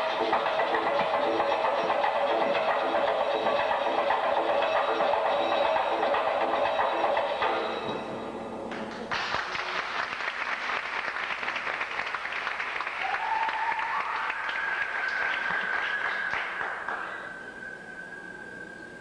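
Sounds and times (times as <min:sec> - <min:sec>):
music: 0:00.0 - 0:19.0
audience applauding: 0:09.1 - 0:17.4.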